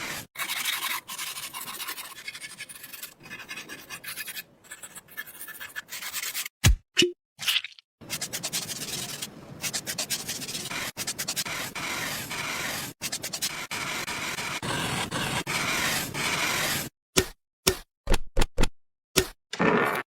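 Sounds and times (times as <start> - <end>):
hand tool scraping a surface: 10.1 - 16.9.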